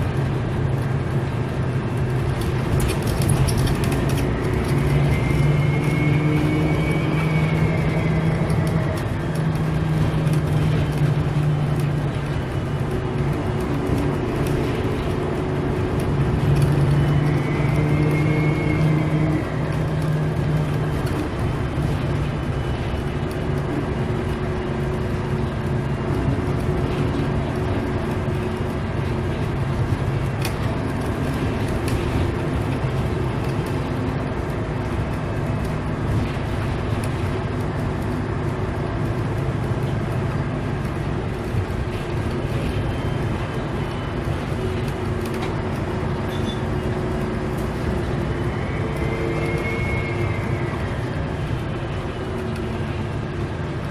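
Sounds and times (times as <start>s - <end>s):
bus diesel engine drone: 0.0s - 53.9s
turbocharger whistle: 4.8s - 8.4s, 17.0s - 19.6s, 48.8s - 50.8s.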